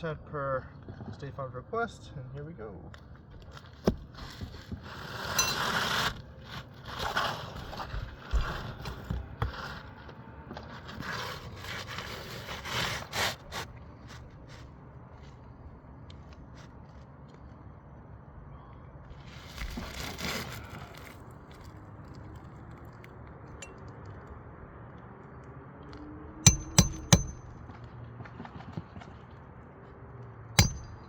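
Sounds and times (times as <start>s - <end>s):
roof shingles scraping and crinkling: 3.0s - 17.5s, 19.1s - 23.1s.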